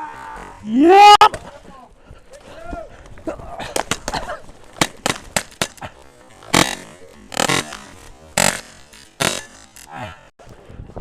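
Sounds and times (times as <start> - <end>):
loud paintball blasts: 3.6 - 10.1.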